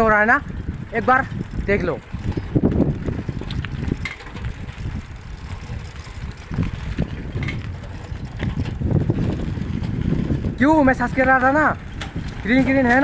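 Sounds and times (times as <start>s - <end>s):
vehicle rumble on road: 0.6s - 10.6s.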